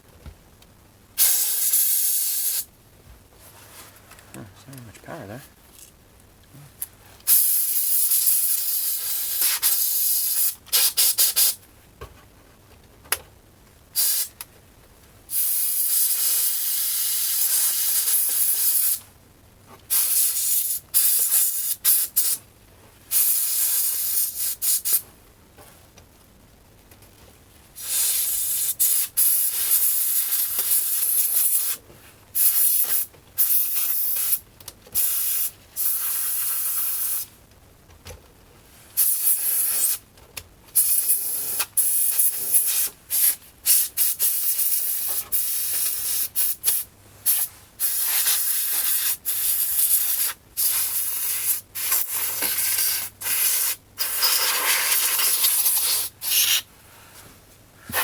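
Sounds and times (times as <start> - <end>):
compressed air spray hiss: 1.2 - 2.7, 14.0 - 14.3, 27.8 - 31.8, 32.4 - 34.4, 35.0 - 37.3, 39.0 - 40.0, 40.8 - 56.7.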